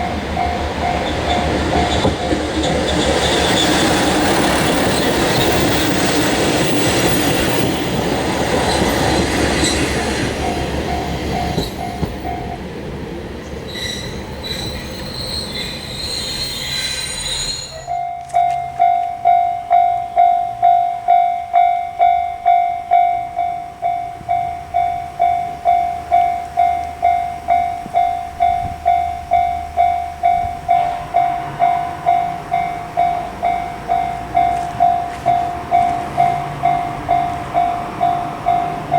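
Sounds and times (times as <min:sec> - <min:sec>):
level crossing warning bell: 0:00.0 - 0:12.8, 0:15.8 - 0:38.9
train passing: 0:00.0 - 0:38.9
faint wheel squeal: 0:02.8 - 0:07.0, 0:13.6 - 0:18.0.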